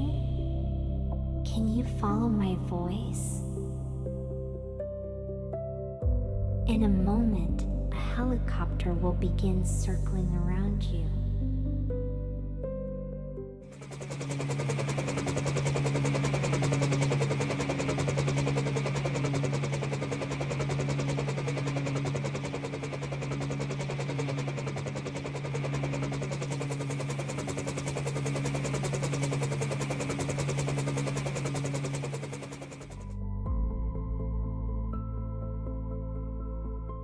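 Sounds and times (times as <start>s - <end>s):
helicopter engine drone: 13.5s - 33.4s
helicopter rotor chop: 13.7s - 33.1s.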